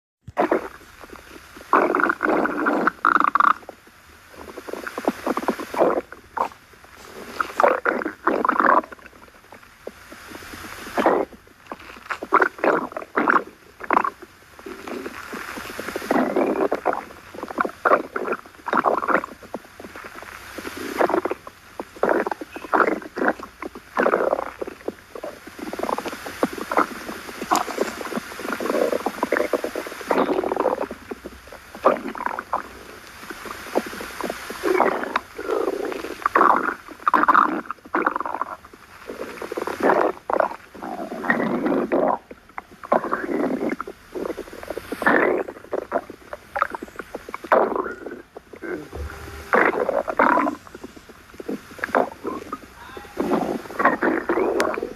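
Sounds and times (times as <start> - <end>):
stomach growling: 0.3 - 54.9.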